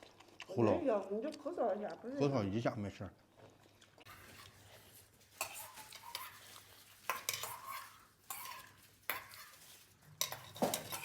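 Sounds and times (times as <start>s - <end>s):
utensils clinking on plates: 5.4s - 11.0s.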